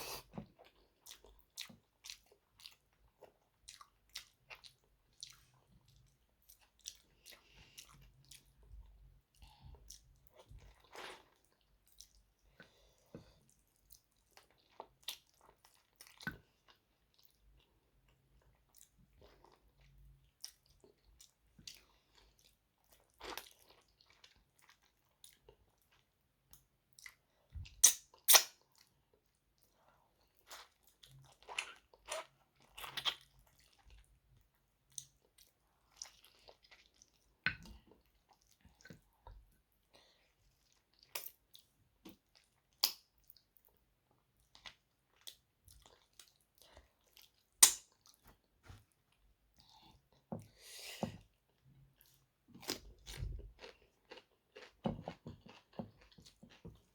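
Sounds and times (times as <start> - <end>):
chewing and mouth clicks: 0.5 - 17.4, 44.4 - 48.2, 52.0 - 56.9.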